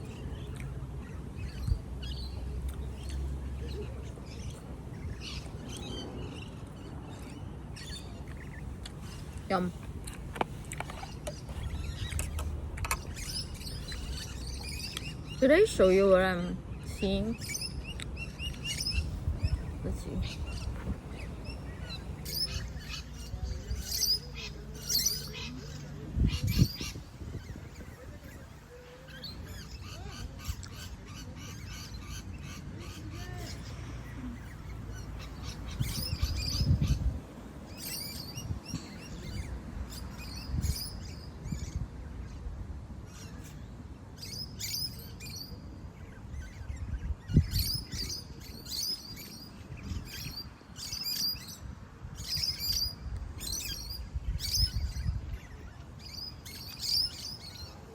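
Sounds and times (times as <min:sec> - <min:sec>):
low rumbles: 0:00.0 - 0:15.4, 0:16.6 - 0:23.8
small birds chirping: 0:00.0 - 0:57.9.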